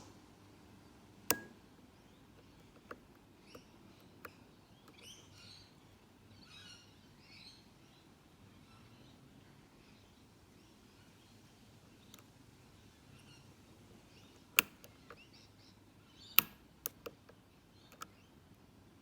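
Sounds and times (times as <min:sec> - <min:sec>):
lock pick metal clicks: 0:01.3 - 0:01.6, 0:14.5 - 0:15.2, 0:16.3 - 0:18.1.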